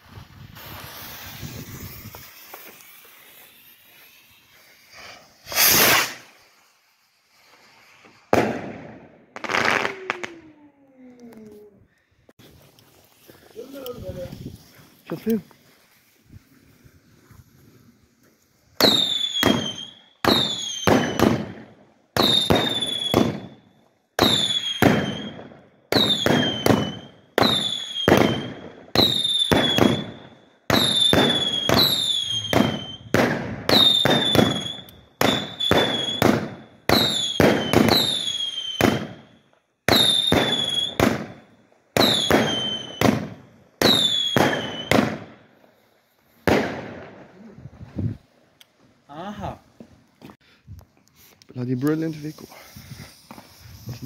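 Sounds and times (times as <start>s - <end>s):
firework shot reports: 0.0s - 6.4s
firework whistle dropping in pitch: 18.8s - 21.2s, 30.7s - 33.1s, 33.7s - 36.2s, 39.9s - 41.0s, 42.0s - 43.1s, 43.8s - 45.0s.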